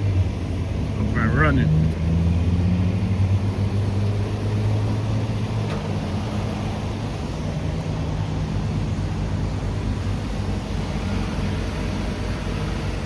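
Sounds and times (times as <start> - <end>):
fuel flowing: 0.0 - 13.0
fuel pump humming: 4.1 - 13.0.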